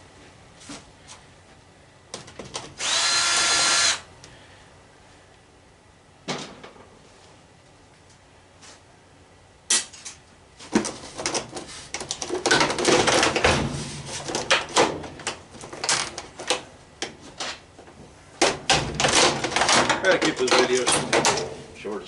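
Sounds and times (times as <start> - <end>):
machine parts knocking and rattling: 10.8 - 16.6, 18.4 - 21.6.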